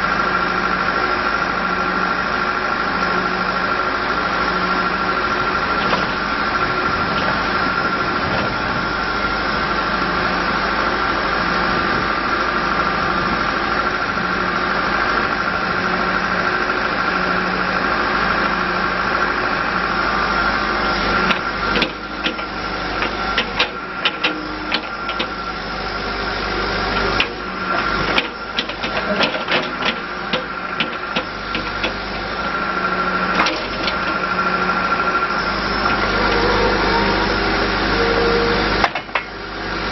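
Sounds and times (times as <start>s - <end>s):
diesel engine running: 0.0s - 39.9s
sharp clicks and knocks: 28.1s - 32.0s
high whine: 34.5s - 39.9s.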